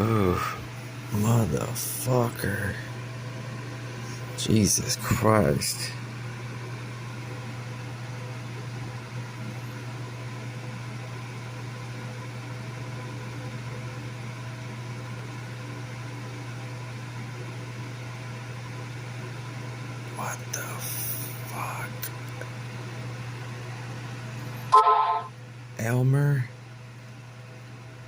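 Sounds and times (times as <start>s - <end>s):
mechanical hum: 0.0s - 28.0s.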